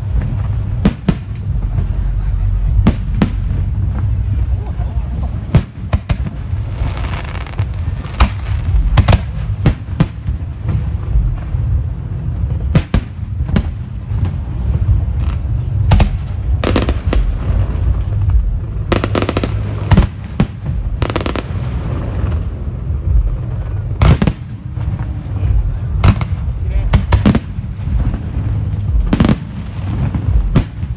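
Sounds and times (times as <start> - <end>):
low rumble: 0.0 - 30.9
firework shells bursting: 12.5 - 30.9.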